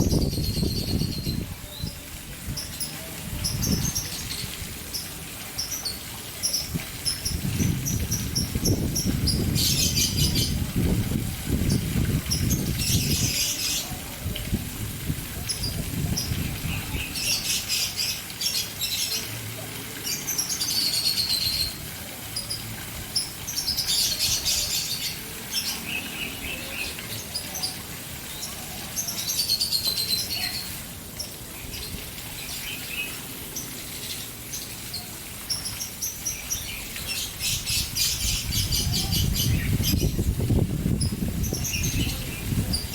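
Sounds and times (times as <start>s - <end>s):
fountain splashing: 0.0s - 42.9s
birds chirping: 22.4s - 42.9s.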